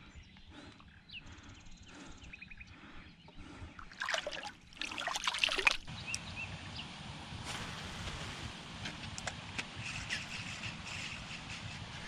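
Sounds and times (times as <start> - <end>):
faint bird chirps: 0.0 - 3.8
water splashing and trickling: 3.8 - 5.9.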